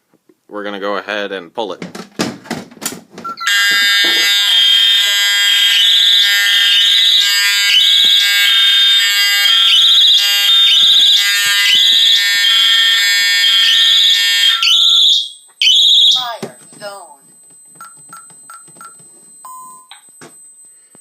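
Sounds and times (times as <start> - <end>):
steady lower alarm tones: 3.2 - 21.0
fire alarm warbling tone: 3.3 - 16.5.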